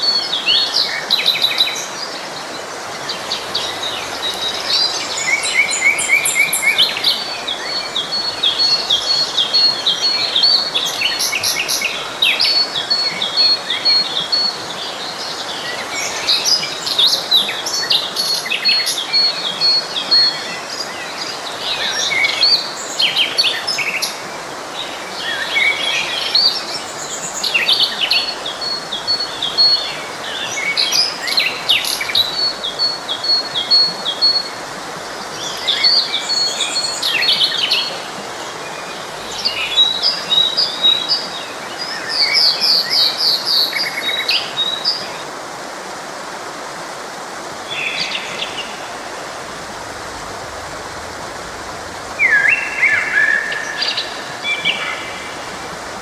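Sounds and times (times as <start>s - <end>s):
songbirds singing and chirping: 0.0s - 45.3s
forest stream rushing: 0.0s - 56.0s.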